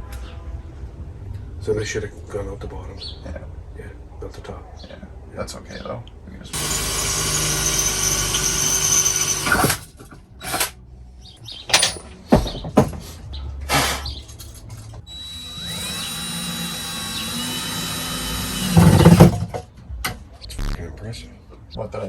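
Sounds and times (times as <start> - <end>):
power drill running: 6.6 - 9.8, 15.1 - 19.3.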